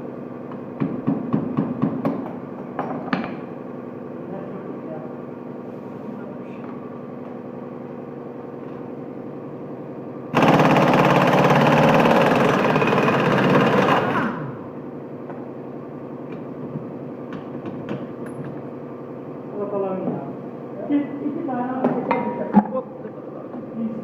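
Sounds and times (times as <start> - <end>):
steady machine hum: 0.0 - 24.0.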